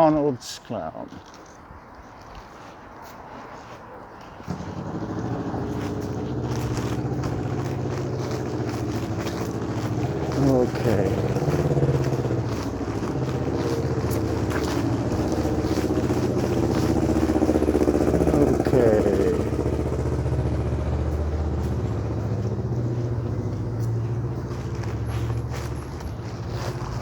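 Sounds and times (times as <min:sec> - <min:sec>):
vehicle engine revving: 0:04.3 - 0:27.0.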